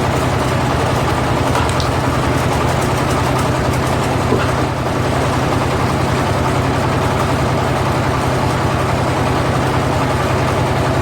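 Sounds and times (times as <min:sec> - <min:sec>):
diesel engine running steadily: 0:00.0 - 0:11.0.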